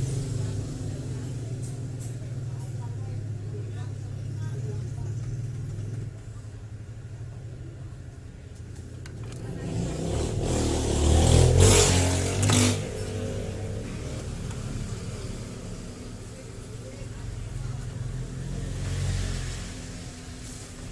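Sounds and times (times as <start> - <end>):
vehicle passing by: 9.4 - 20.9.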